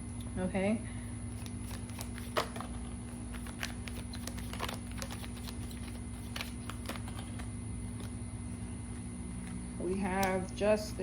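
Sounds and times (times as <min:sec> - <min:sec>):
low electrical hum: 0:00.0 - 0:11.0
cards tapping and flicking: 0:01.4 - 0:08.2.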